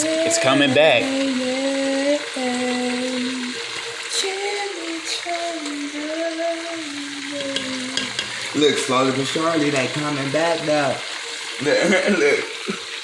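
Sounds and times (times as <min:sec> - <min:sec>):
man humming slow tune: 0:00.0 - 0:08.1
food deep-frying in oil: 0:00.0 - 0:13.0.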